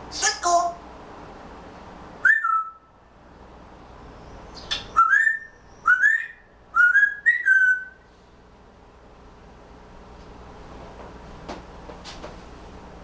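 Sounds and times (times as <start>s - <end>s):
parrot whistling: 2.2s - 2.9s, 4.6s - 8.0s.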